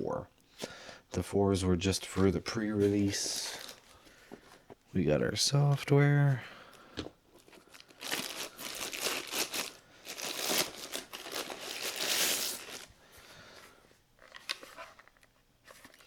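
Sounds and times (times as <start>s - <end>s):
plastic packaging crinkling: 2.0s - 4.5s, 7.3s - 12.9s.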